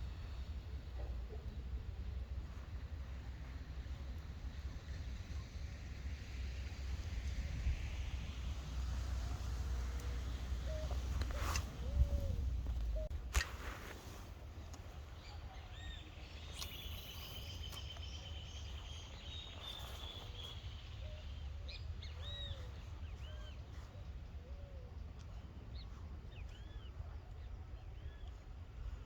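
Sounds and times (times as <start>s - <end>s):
steady low rumble: 0.0s - 29.0s
birds chirping: 9.2s - 28.5s.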